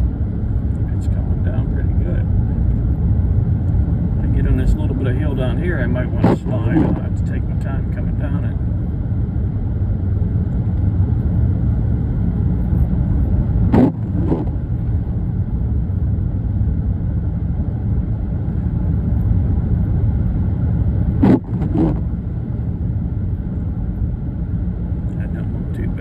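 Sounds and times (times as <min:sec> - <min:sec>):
car engine and road noise: 0:00.0 - 0:26.0
windshield wipers sweeping: 0:06.2 - 0:07.0, 0:13.7 - 0:14.6, 0:21.2 - 0:22.1.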